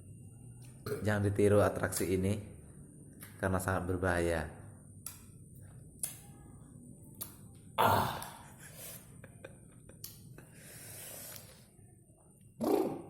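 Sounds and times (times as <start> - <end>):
mouth clicks and smacks: 7.1 - 7.6, 9.9 - 10.4
person sighing: 7.8 - 8.6.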